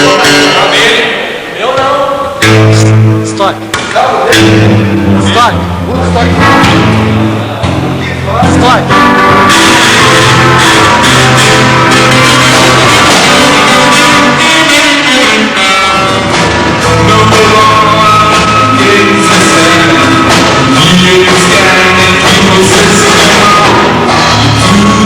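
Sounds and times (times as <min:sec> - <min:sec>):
bass: 0:00.0 - 0:01.0, 0:01.6 - 0:25.0
drums: 0:01.7 - 0:25.0
electric guitar: 0:02.4 - 0:25.0
person singing: 0:08.0 - 0:25.0.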